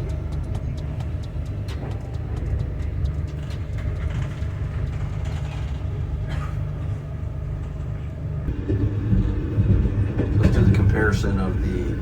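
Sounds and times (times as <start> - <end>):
train carriage rumble: 0.0 - 12.0
light clicks and rattles: 0.3 - 6.1.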